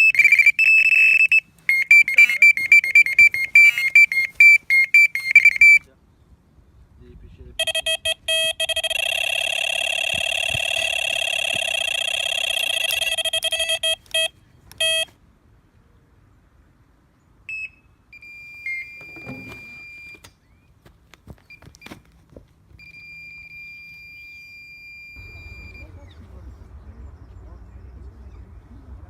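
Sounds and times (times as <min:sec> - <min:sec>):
bite alarm beeping: 0:00.0 - 0:05.9, 0:07.6 - 0:15.1, 0:17.5 - 0:20.3, 0:22.8 - 0:26.0.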